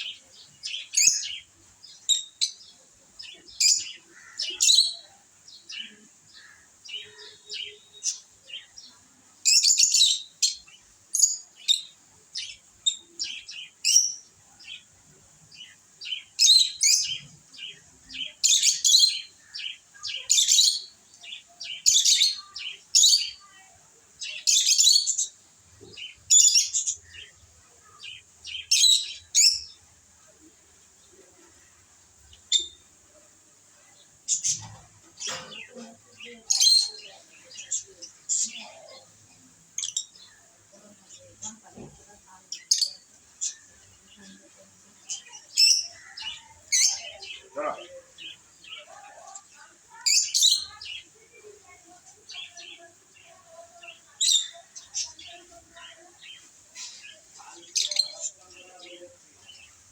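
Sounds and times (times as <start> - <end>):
faint high hiss: 0.0 - 59.9
lovebirds chirping: 0.0 - 59.9.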